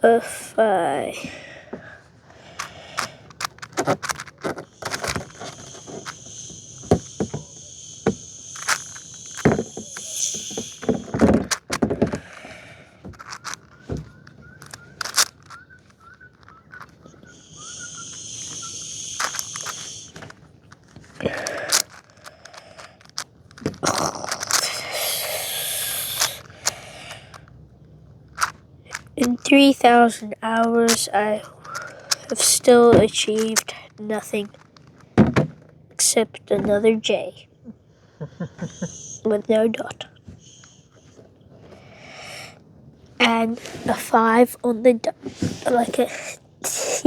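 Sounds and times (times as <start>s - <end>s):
plastic puzzle cube clicks: 2.4s - 27.6s, 28.3s - 35.1s.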